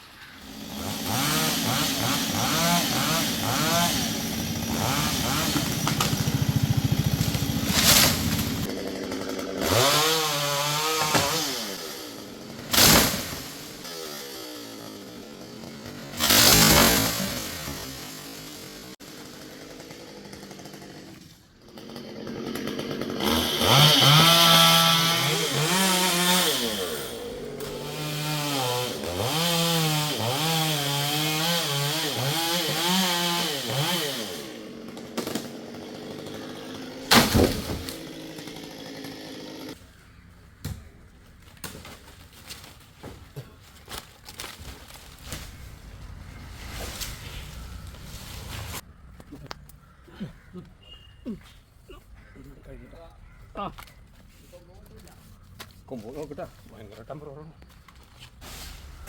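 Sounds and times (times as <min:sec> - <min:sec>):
chainsaw revving cutting wood: 0:00.4 - 0:39.8
sharp crack: 0:12.7 - 0:13.6, 0:16.2 - 0:17.4, 0:37.1 - 0:38.1.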